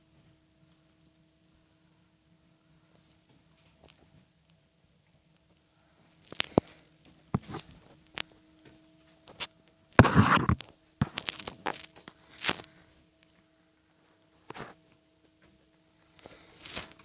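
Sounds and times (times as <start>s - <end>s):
rustling scuffle: 16.2s - 17.0s.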